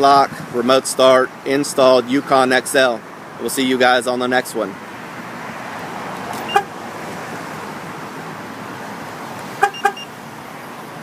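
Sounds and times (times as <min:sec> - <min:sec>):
car alarm chirp: 0:06.4 - 0:06.7, 0:09.6 - 0:10.1.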